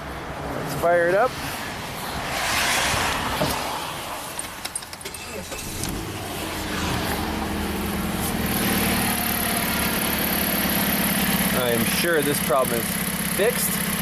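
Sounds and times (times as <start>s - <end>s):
car engine starting and idling: 3.5s - 14.0s.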